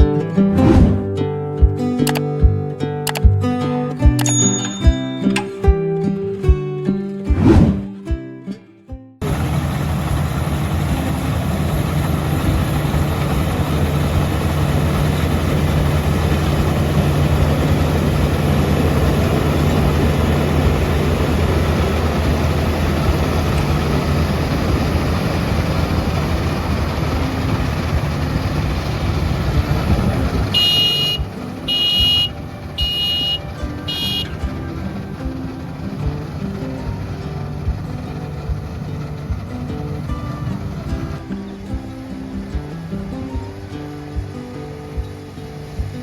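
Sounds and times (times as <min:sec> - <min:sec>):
combine harvester running: 0:00.0 - 0:06.6, 0:09.2 - 0:46.0
high repeating beep: 0:04.2 - 0:05.8, 0:30.6 - 0:34.4.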